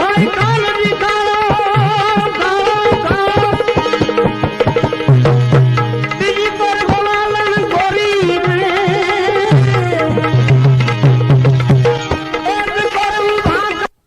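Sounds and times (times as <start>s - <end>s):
bass drum tone: 0.0s - 7.8s, 8.4s - 12.5s
wavering melody line: 0.0s - 13.7s
tabla strokes: 0.0s - 13.8s.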